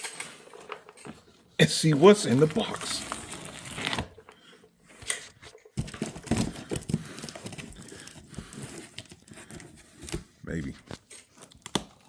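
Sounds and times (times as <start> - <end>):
cardboard box rustling: 1.9 - 4.2, 5.3 - 10.4.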